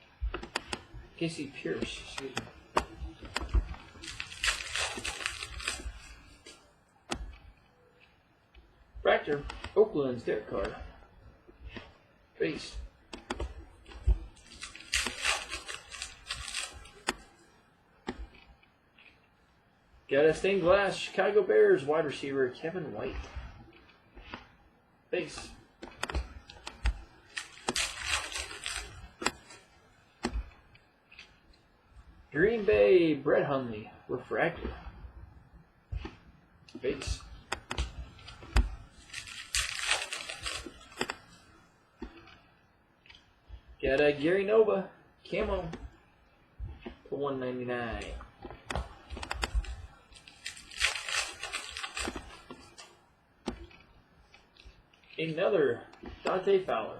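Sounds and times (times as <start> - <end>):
cards rustling and sliding: 0.3 - 8.2, 11.6 - 17.4, 25.2 - 31.5, 35.9 - 42.4, 48.1 - 53.9
rustle of foil wrapper: 3.8 - 6.6, 14.4 - 17.4, 26.5 - 29.7, 38.1 - 41.3, 49.2 - 52.9.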